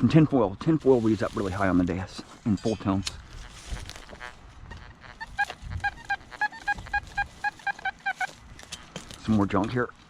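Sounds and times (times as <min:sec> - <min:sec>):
metal detector beeping: 0:03.4 - 0:08.3.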